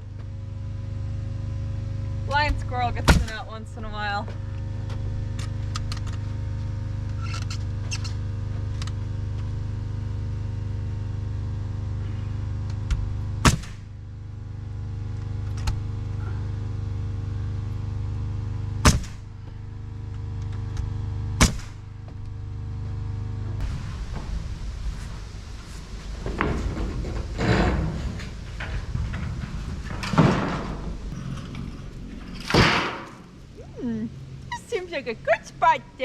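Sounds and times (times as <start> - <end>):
steady mechanical hum: 0.0 - 36.0
nail gun shots: 13.4 - 13.8, 18.8 - 19.2, 21.4 - 21.8.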